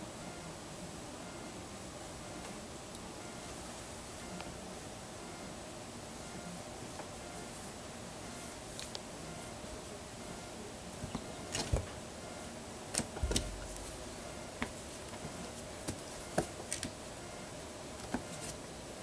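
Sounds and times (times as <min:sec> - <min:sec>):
soft thump: 0:13.2 - 0:13.8.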